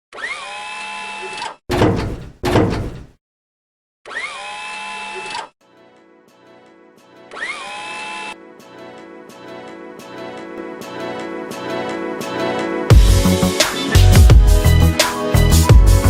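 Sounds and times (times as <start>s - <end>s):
heavy thunks: 1.7s - 3.2s.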